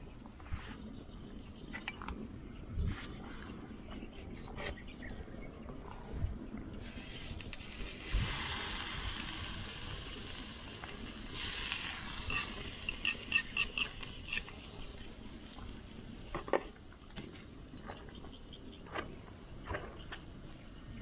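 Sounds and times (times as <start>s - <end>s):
fire hissing: 6.8s - 14.8s.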